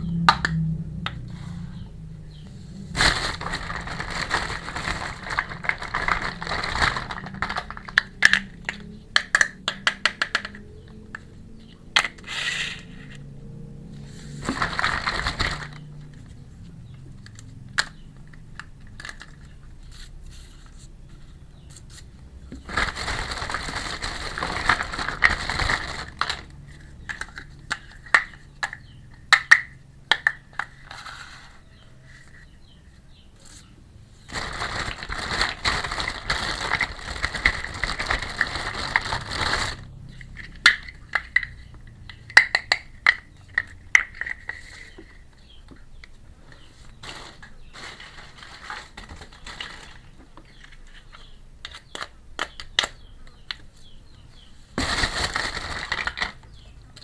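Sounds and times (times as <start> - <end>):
packaging crinkling: 2.9 - 8.5, 14.4 - 16.2, 22.5 - 27.4, 34.3 - 41.4, 47.0 - 50.2, 54.8 - 56.5
small pieces clicking and tapping: 4.8 - 11.3, 17.2 - 19.7, 24.4 - 30.8, 40.1 - 46.2, 49.0 - 53.7.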